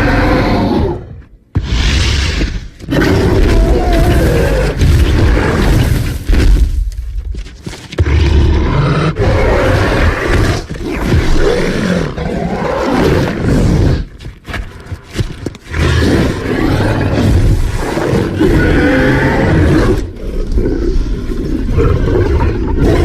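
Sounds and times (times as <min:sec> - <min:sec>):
dinosaur roars and growls: 0:00.0 - 0:06.1, 0:08.0 - 0:14.2, 0:15.7 - 0:23.0.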